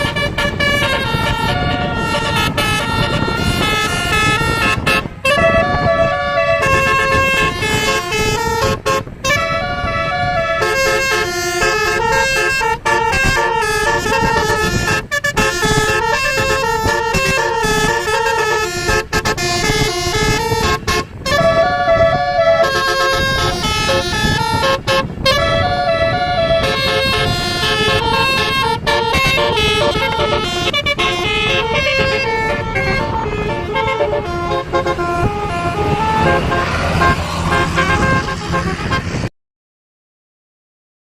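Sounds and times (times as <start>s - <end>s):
multi-tone bus horn tune: 0.0s - 39.3s
vehicle rumble: 0.0s - 39.3s.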